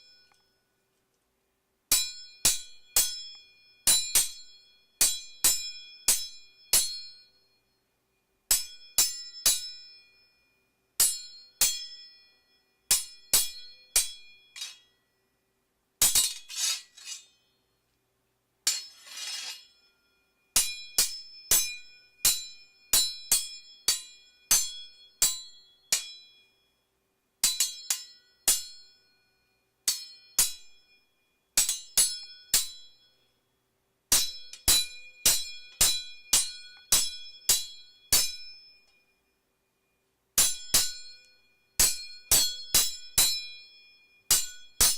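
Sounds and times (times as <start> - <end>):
steel blades clanging: 12.9 - 15.0, 16.0 - 17.5, 18.6 - 19.9
metal scraping on metal: 16.2 - 17.4, 18.7 - 19.8.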